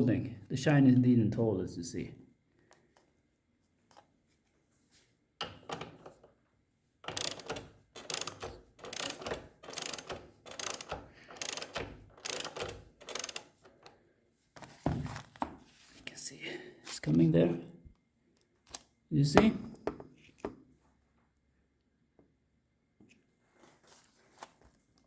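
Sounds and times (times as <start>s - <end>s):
wrench ratcheting clicks: 7.1s - 13.9s.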